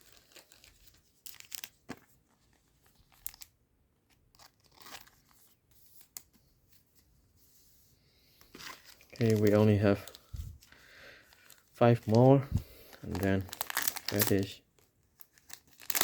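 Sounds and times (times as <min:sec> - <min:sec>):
foil wrapper crinkling and tearing: 0:00.0 - 0:01.9, 0:02.8 - 0:03.5, 0:04.1 - 0:06.2, 0:08.6 - 0:16.0.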